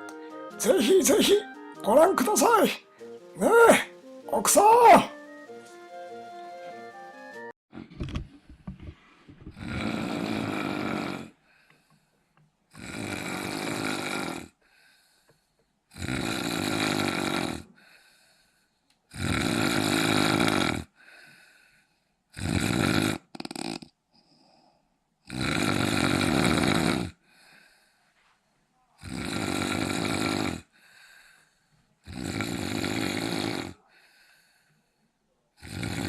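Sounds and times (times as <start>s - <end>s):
quiet breaths: 8.4s - 16.0s, 16.7s - 19.3s, 20.4s - 22.4s, 23.8s - 25.2s, 26.4s - 36.0s
man snoring: 9.6s - 11.4s, 12.7s - 14.6s, 15.9s - 17.7s, 19.1s - 20.9s, 22.4s - 23.9s, 25.3s - 27.2s, 29.0s - 30.8s, 32.0s - 33.9s, 35.6s - 36.0s.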